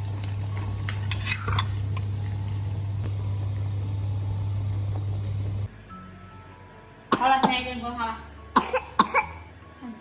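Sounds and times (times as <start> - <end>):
steady low hum: 1.7 - 5.7.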